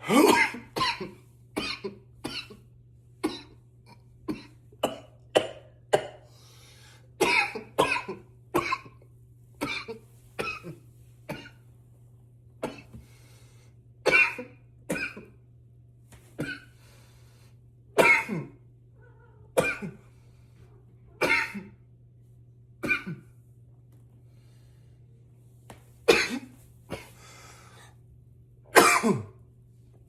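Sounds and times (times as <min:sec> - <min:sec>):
man coughing: 0:00.0 - 0:02.6, 0:07.2 - 0:09.0, 0:18.0 - 0:18.6, 0:21.2 - 0:21.8, 0:22.8 - 0:23.3, 0:26.1 - 0:27.2, 0:28.8 - 0:29.4.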